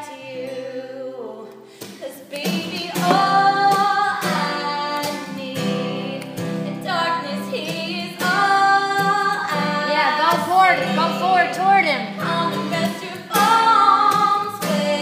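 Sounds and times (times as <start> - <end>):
acoustic guitar strummed and plucked: 0.0 - 15.0
woman singing with vibrato: 0.0 - 15.0.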